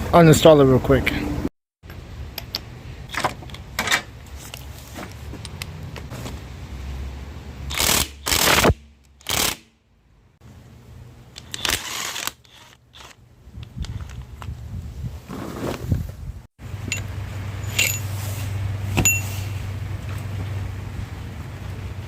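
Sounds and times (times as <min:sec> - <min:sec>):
loud tool bursts: 0:07.7 - 0:09.7.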